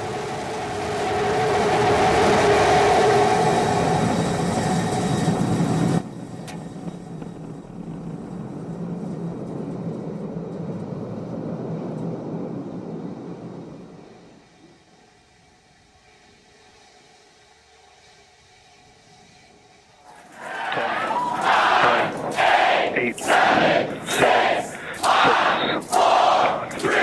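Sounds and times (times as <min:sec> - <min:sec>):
rocket engine roaring: 0:00.0 - 0:14.8, 0:20.1 - 0:27.0
low rumble: 0:06.1 - 0:14.4.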